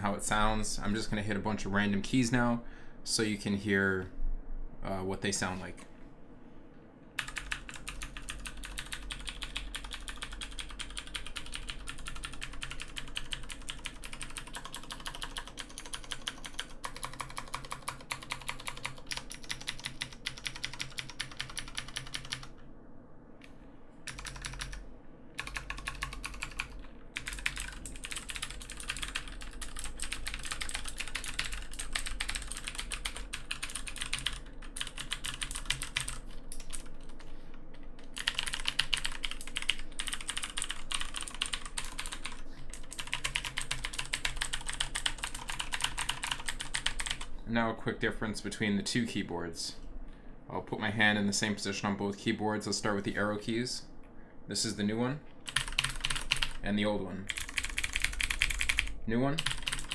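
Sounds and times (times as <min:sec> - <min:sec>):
clicky mechanical keyboard typing: 0:07.2 - 0:22.5, 0:24.1 - 0:24.8, 0:25.4 - 0:47.3, 0:55.4 - 0:56.6, 0:57.3 - 0:59.9.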